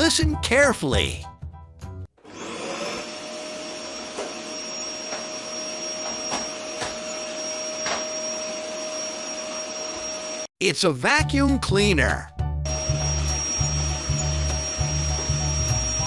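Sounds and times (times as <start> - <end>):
vacuum cleaner running: 2.2 - 10.5, 12.7 - 16.0.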